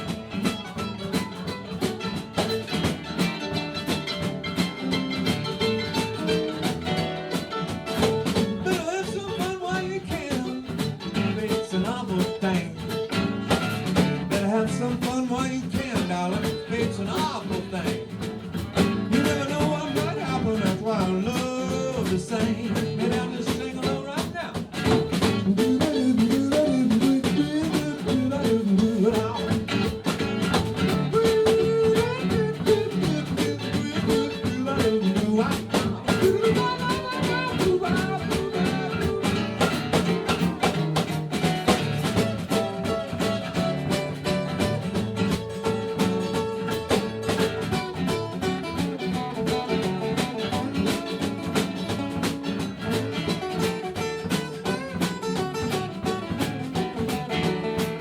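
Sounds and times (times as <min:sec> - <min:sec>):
blues guitar: 0:00.0 - 0:58.0
drum kit beat: 0:00.0 - 0:58.0.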